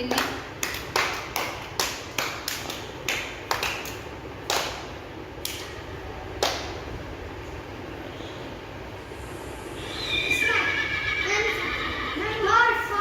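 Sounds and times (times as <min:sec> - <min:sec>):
people clapping: 0:00.0 - 0:06.8.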